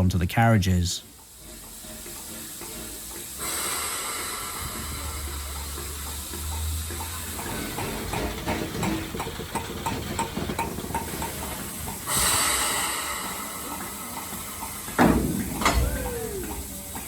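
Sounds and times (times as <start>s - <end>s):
loud hiss of steam: 0.6s - 17.0s
light knocking of locomotive: 1.0s - 17.0s.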